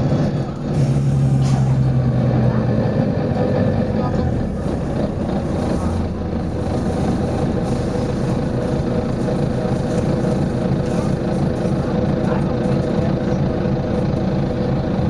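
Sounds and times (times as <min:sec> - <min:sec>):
bus diesel engine humming: 0:00.0 - 0:15.0.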